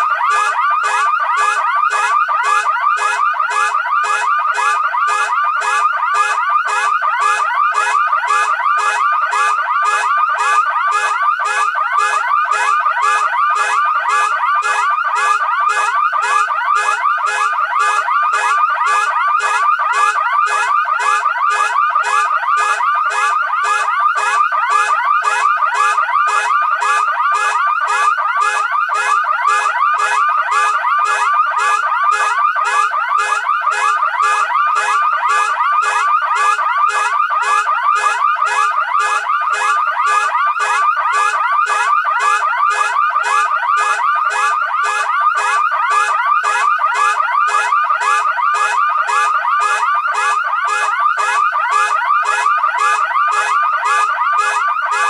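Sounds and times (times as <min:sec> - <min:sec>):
car alarm sirens pulsing: 0:00.0 - 0:55.0.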